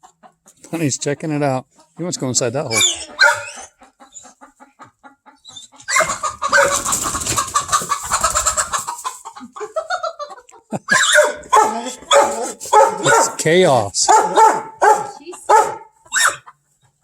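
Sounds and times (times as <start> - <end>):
hens clucking: 0.0 - 17.0
chicken squawking: 2.6 - 13.4, 14.0 - 16.8
wings flapping: 6.0 - 9.0.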